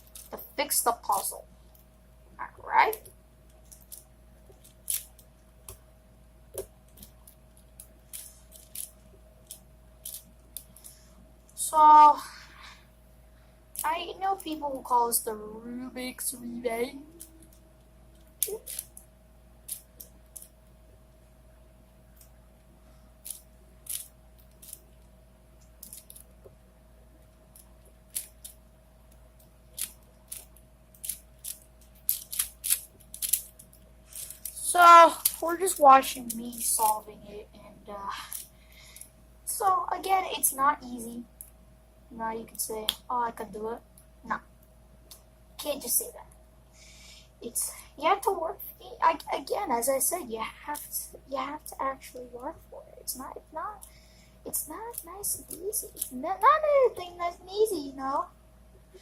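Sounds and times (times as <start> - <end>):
puzzle cube plastic clicks: 29.8 - 34.6.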